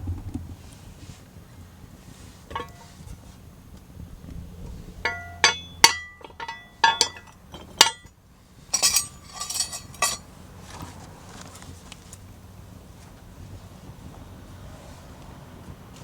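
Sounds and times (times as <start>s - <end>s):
rattling metal scrape: 0.0s - 0.9s, 2.5s - 3.2s, 8.7s - 10.2s
iron pan clinking on metal stove: 2.5s - 3.0s, 5.1s - 8.1s, 8.7s - 10.2s.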